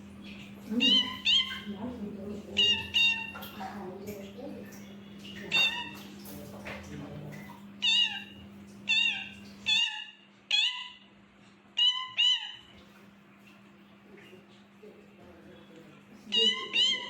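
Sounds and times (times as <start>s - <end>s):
parrot calling: 0.2s - 1.7s, 2.6s - 3.6s, 5.5s - 6.0s, 7.8s - 11.1s, 11.8s - 12.7s, 16.3s - 17.0s.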